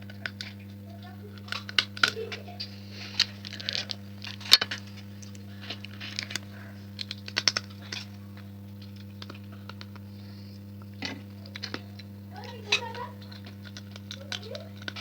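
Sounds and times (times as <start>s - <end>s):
steady low hum: 0.0s - 15.0s
chewing and lip-smacking: 0.2s - 10.1s.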